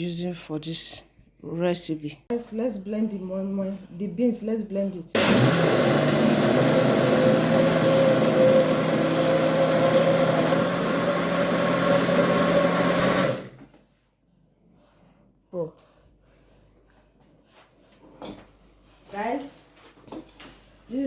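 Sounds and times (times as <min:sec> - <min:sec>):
blender motor running: 0:05.2 - 0:13.6.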